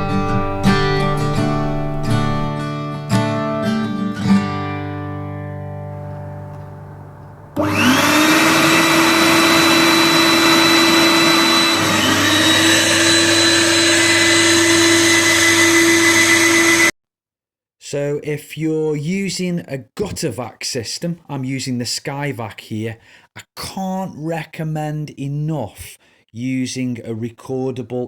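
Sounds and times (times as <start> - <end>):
second rising whine: 0.0 - 2.6, 5.3 - 16.9
acoustic guitar music: 0.0 - 7.6
vacuum motor whine and suction: 6.6 - 16.9.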